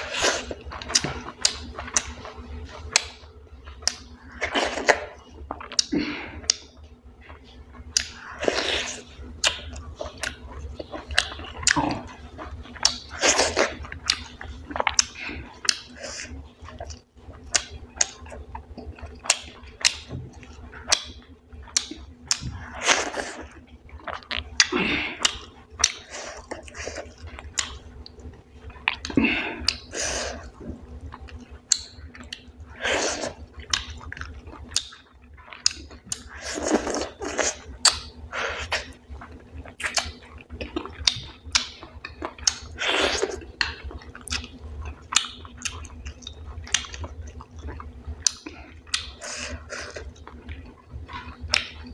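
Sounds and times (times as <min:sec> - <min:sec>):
person chewing food: 0:00.0 - 0:51.9
mouth clicks and smacks: 0:33.3 - 0:51.9.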